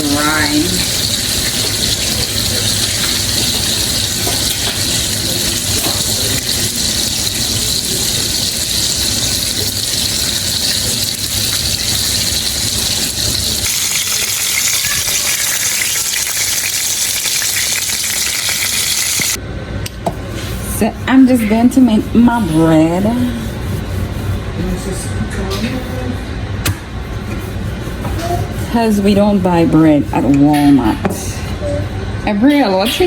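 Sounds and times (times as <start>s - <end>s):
chicken sizzling in hot oil: 0.0s - 19.4s.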